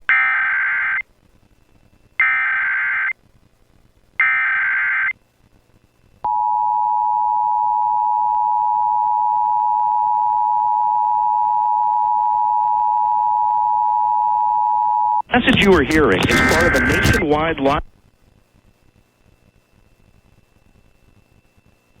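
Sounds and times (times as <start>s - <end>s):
two-tone attention signal: 16.2s - 17.2s.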